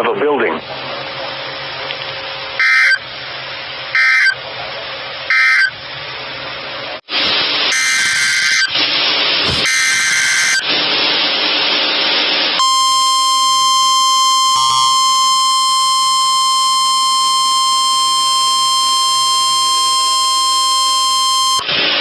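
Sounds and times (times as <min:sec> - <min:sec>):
radio hiss: 0:02.6 - 0:03.0, 0:07.1 - 0:22.0
screeching digital header bursts: 0:02.6 - 0:03.0, 0:04.0 - 0:04.4, 0:05.3 - 0:05.7, 0:07.7 - 0:08.7, 0:09.6 - 0:10.6, 0:12.6 - 0:21.7
steady warning alarm tone: 0:02.6 - 0:03.0, 0:04.0 - 0:04.4, 0:05.3 - 0:05.8, 0:07.7 - 0:08.7, 0:09.6 - 0:10.7, 0:12.6 - 0:21.7.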